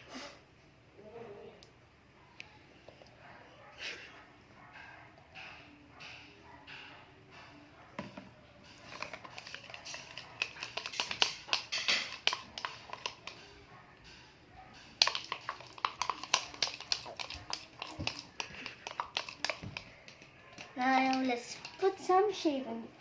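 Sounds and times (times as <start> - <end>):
slime being stirred in a bowl: 8.6 - 13.7, 14.8 - 22.6.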